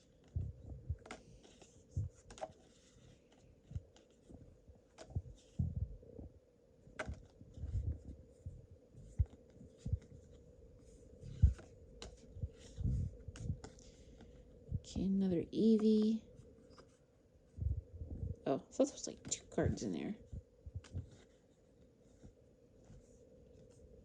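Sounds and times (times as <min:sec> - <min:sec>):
trading cards rustling: 0:00.0 - 0:05.6, 0:06.8 - 0:14.7.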